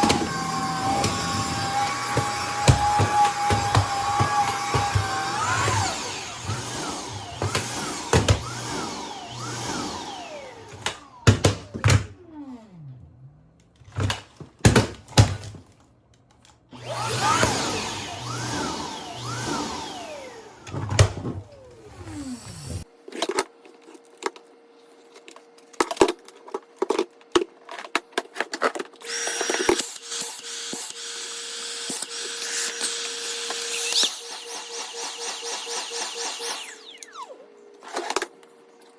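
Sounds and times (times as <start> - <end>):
vacuum cleaner running: 0.0 - 14.2, 16.7 - 22.9, 29.0 - 38.6.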